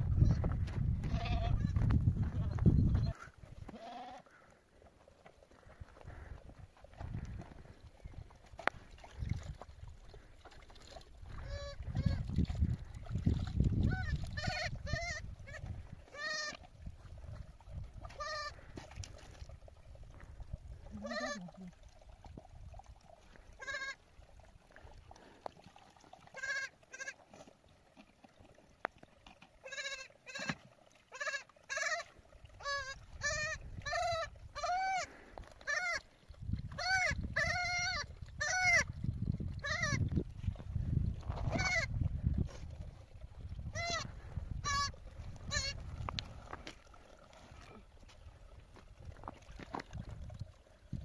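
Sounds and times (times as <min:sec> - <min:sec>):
sheep bleating: 0:01.1 - 0:01.6, 0:03.0 - 0:04.2, 0:21.0 - 0:21.5, 0:29.6 - 0:30.6.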